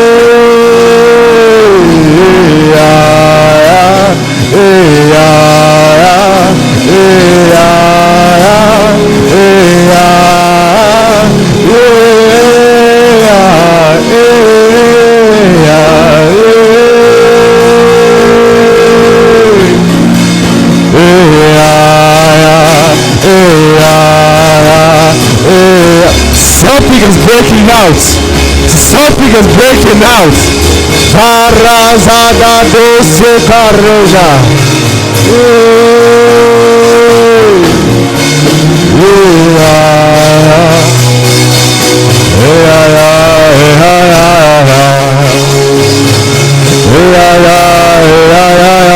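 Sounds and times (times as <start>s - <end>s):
lead line with long held notes: 0.0s - 48.9s
slow worship music: 0.0s - 48.9s.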